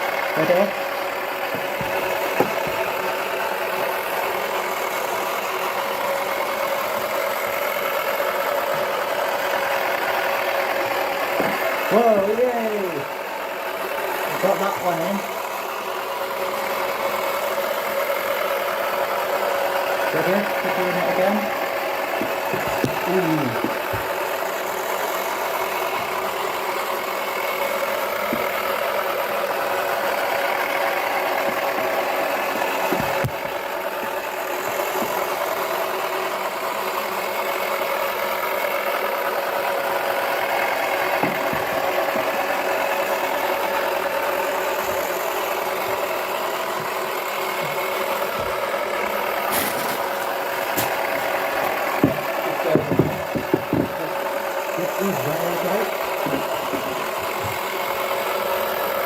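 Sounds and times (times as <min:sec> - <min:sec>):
toy motor whirring hum: 0:39.4 - 0:53.1.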